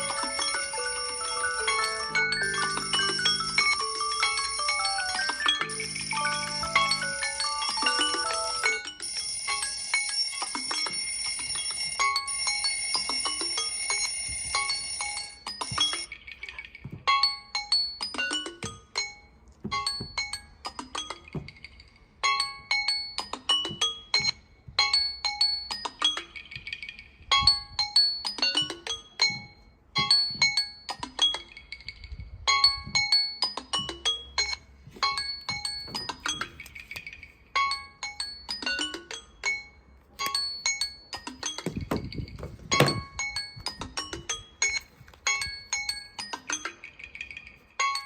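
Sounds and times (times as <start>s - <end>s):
marimba-like alarm tone: 0.0s - 9.8s
ringing chime: 0.0s - 16.1s.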